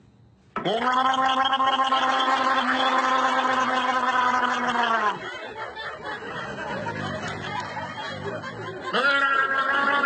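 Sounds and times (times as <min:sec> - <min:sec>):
faint low chuckle-like sounds: 0:04.7 - 0:10.0.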